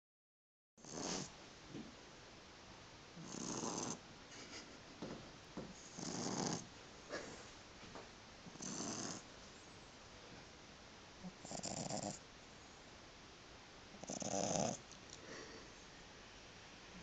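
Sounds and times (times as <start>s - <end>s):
puppy snoring: 0.8s - 1.3s, 3.2s - 4.0s, 5.7s - 7.3s, 8.5s - 9.3s, 11.2s - 12.2s, 14.0s - 14.9s.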